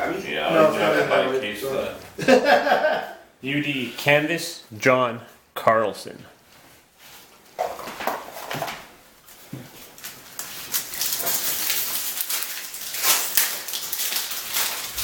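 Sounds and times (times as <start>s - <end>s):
wrappers crinkling and tearing: 9.3s - 15.0s.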